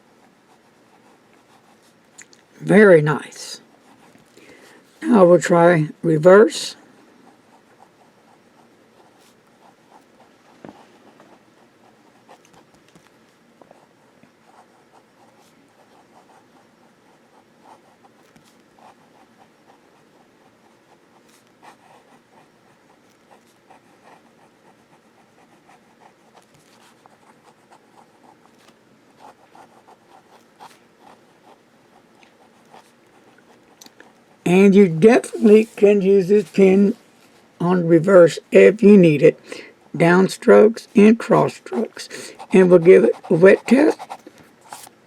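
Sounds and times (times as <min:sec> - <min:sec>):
pen nib scratching paper: 0:00.0 - 0:02.2, 0:07.2 - 0:13.1, 0:13.7 - 0:36.9, 0:40.8 - 0:45.0.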